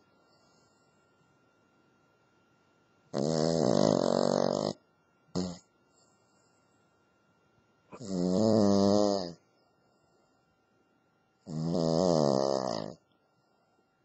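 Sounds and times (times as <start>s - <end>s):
dog snoring: 3.1s - 5.7s, 7.9s - 9.4s, 11.4s - 13.0s.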